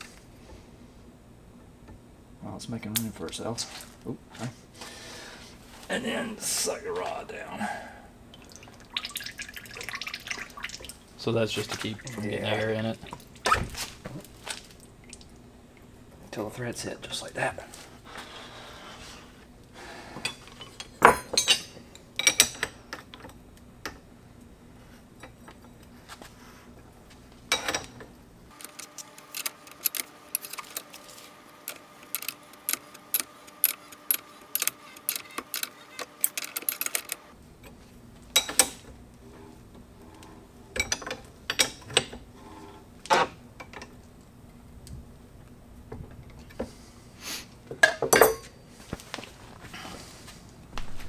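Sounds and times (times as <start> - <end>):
metal tools clicking and clinking: 27.5 - 37.3
rapid clicking: 28.5 - 37.3.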